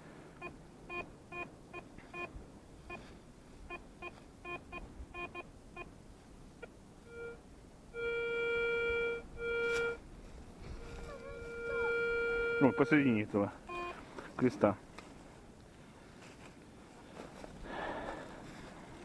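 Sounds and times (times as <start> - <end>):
metal detector beeping: 0.4 - 2.3, 3.7 - 5.9, 7.1 - 7.4, 8.0 - 10.0, 10.8 - 14.0.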